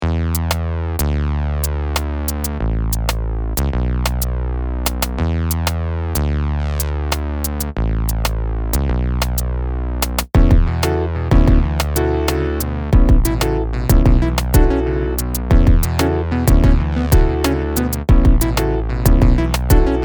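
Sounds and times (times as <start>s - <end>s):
synthesizer bass notes: 0.0s - 20.0s
drum-machine clicks: 4.8s - 5.8s, 10.0s - 20.0s.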